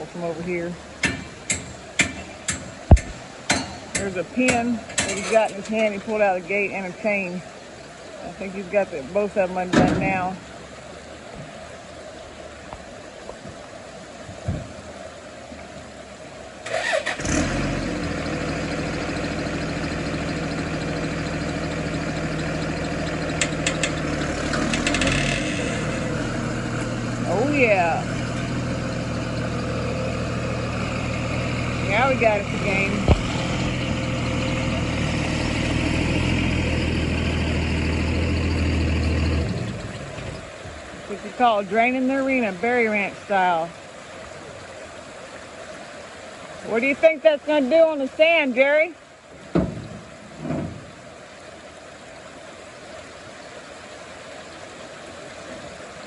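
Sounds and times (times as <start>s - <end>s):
vehicle engine idling: 0.0s - 56.0s
engine cranking and starting: 16.6s - 26.2s
engine idling: 16.6s - 42.7s.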